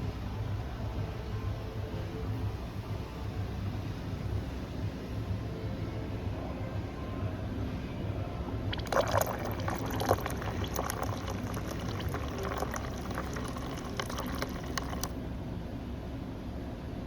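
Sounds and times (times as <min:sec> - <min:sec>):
coffee machine spluttering: 0:08.7 - 0:15.2.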